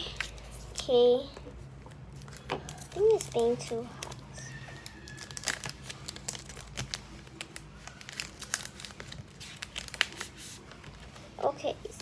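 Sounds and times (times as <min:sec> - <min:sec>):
packaging crinkling: 0:02.1 - 0:11.2.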